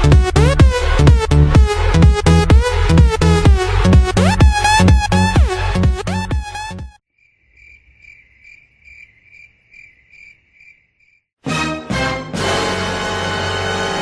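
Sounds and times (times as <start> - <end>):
crickets chirping: 7.2 - 11.2.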